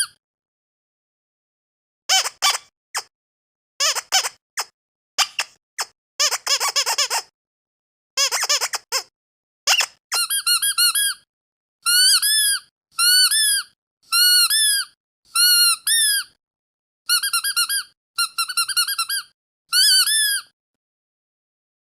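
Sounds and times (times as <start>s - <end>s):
squeaky dog toy squeaking: 2.1s - 3.1s, 3.8s - 7.3s, 8.2s - 9.1s, 9.7s - 11.2s, 11.8s - 16.4s, 17.1s - 20.5s.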